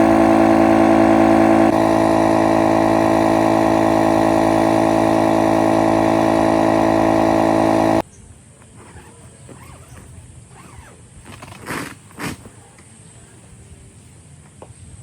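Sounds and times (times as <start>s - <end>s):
motor running steadily: 0.0s - 8.0s.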